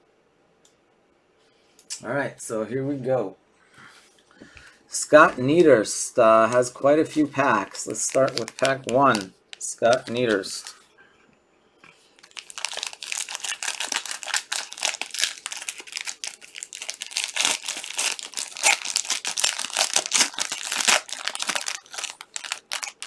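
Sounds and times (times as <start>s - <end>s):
plastic wrapper tearing and crinkling: 6.4s - 10.7s, 12.2s - 23.0s.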